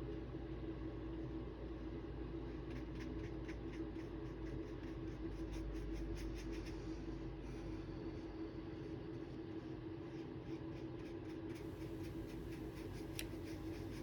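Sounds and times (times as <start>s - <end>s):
art tool scratching on paper: 2.5s - 7.7s, 8.8s - 14.0s.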